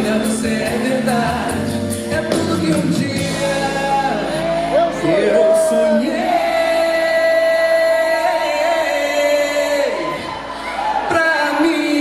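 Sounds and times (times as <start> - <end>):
live band playing: 0.0 - 8.4.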